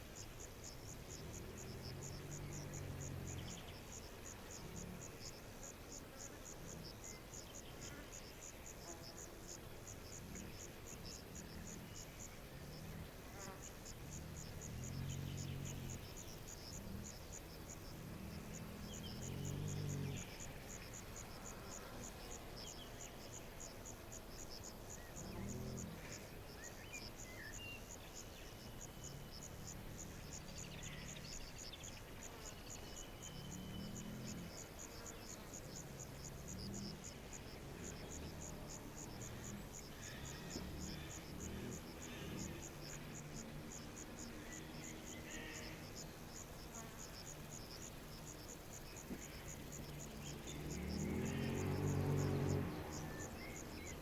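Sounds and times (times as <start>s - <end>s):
cricket chirping: 0.0s - 54.0s.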